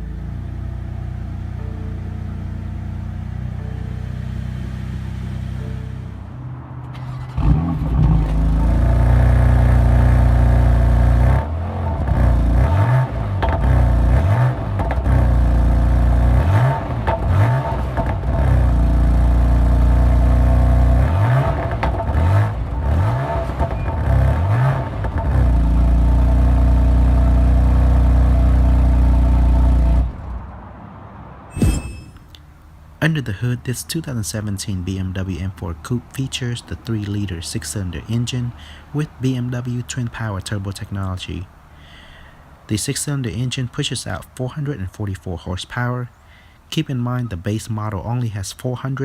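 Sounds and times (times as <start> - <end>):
car engine revving: 0.0 - 30.5.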